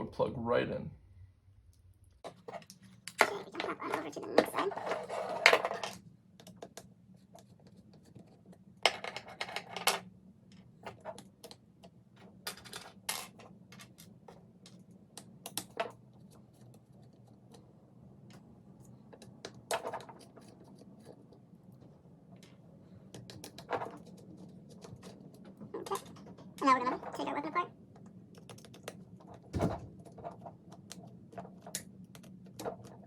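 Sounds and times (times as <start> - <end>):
small parts clicking and tapping: 2.2 - 17.7, 18.3 - 33.0.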